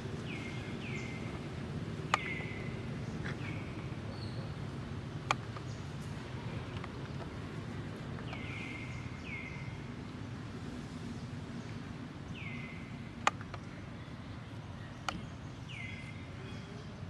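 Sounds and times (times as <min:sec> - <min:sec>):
sharp clicks: 0:13.2 - 0:13.7.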